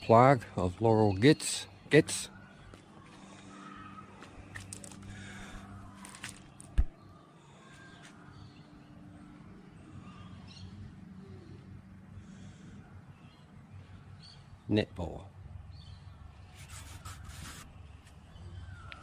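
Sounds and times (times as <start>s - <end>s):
faint bird chirps: 1.1s - 14.5s, 15.7s - 19.0s.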